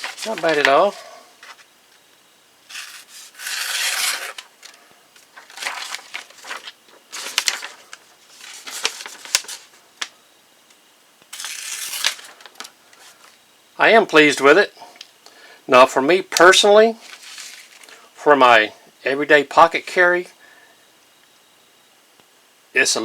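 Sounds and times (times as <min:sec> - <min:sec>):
knife slicing through paper: 0:02.7 - 0:04.4, 0:11.4 - 0:12.4.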